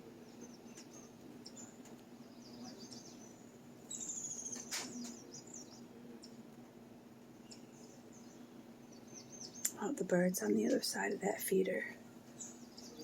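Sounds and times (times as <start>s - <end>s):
songbirds chirping: 0.0s - 13.0s
steady low hum: 0.0s - 13.0s.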